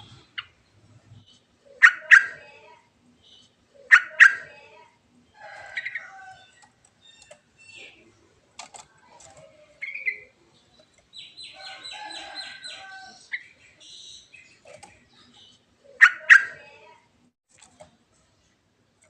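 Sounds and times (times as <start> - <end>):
bulbul singing chirps: 9.8 - 16.6.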